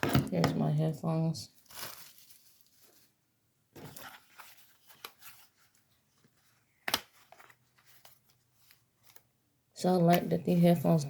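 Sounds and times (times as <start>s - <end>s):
packaging rustling and crinkling: 1.5s - 9.3s.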